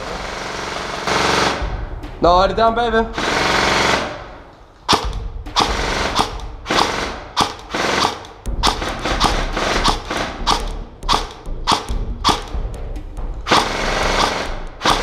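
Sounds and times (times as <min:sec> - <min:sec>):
airsoft rifle shots: 0:03.2 - 0:12.6, 0:13.4 - 0:15.0.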